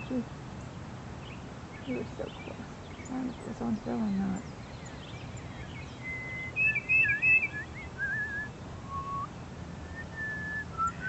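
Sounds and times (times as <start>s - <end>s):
woman whistling: 7.6s - 9.3s, 9.9s - 11.0s.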